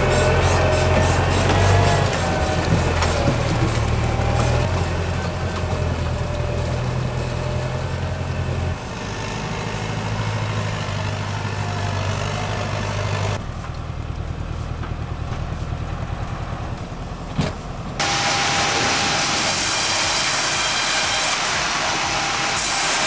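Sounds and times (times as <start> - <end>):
heavy machinery engine running: 0.0 - 23.0
saw cutting through wood: 0.0 - 23.0.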